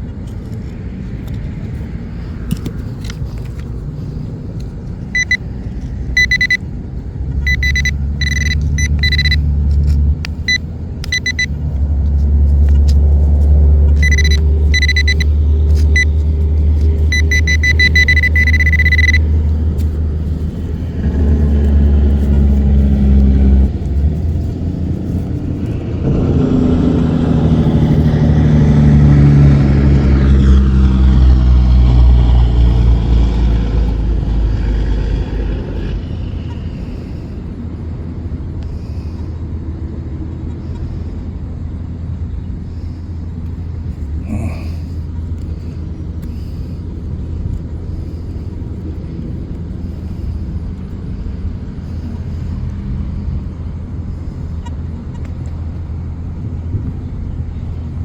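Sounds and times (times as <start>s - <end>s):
heavy low rumble: 0.0s - 58.0s
metal detector beeps: 5.1s - 6.7s, 7.4s - 9.5s, 10.3s - 11.6s, 13.9s - 19.4s.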